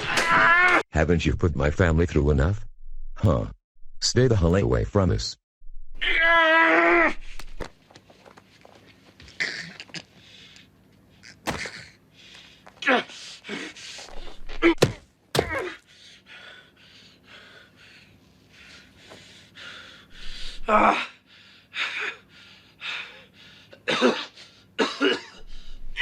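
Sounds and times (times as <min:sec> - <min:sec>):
sharp thuds: 0:11.5 - 0:11.9, 0:14.8 - 0:15.7
cartoon characters crying and grunting: 0:15.4 - 0:15.8.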